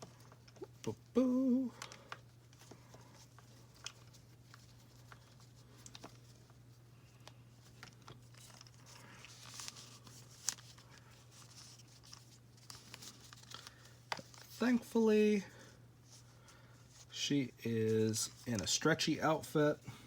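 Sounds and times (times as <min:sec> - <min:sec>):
rustling and clicks of plastic doll: 0:00.0 - 0:01.0, 0:01.7 - 0:14.7
low steady hum: 0:00.0 - 0:20.0.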